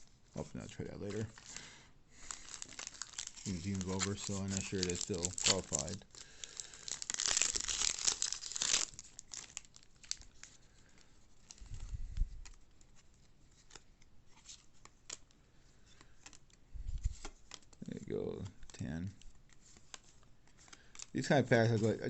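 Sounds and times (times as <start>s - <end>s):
wrapper tearing and crinkling: 2.2s - 10.6s
cards clicking and rustling: 2.2s - 11.6s, 12.4s - 22.0s.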